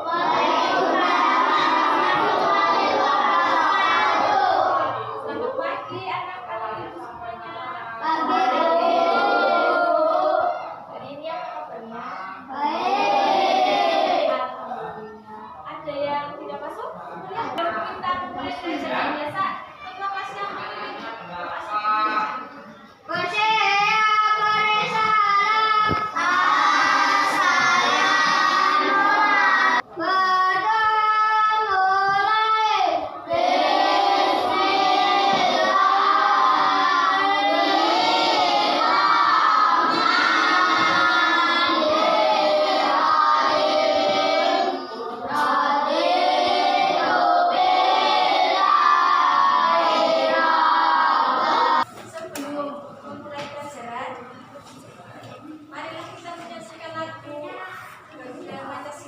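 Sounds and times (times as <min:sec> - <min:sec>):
children singing: 0:00.0 - 0:06.0, 0:08.0 - 0:11.0, 0:11.8 - 0:15.3, 0:22.0 - 0:51.9.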